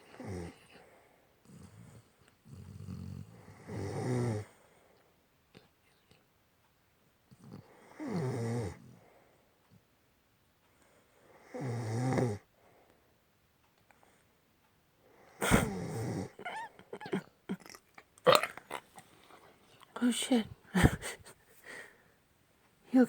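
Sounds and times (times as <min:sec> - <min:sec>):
deep snoring: 0:01.5 - 0:04.5, 0:07.4 - 0:09.0, 0:11.5 - 0:12.5, 0:15.4 - 0:17.2
rough snort: 0:15.4 - 0:19.4.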